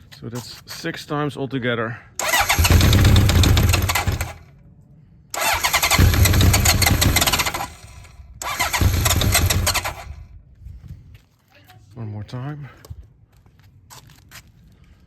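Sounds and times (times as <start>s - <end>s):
electric starter cranking engine: 2.2s - 4.4s, 5.4s - 10.2s.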